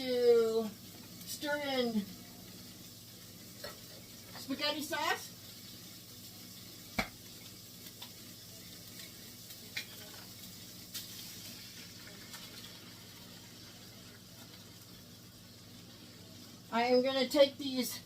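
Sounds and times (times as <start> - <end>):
faint sizzle in a pan: 0.0 - 18.0.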